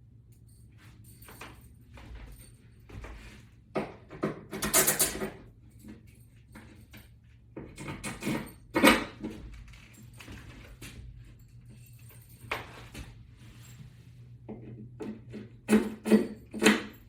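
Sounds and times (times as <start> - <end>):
screws and washers clinking: 4.6 - 7.2.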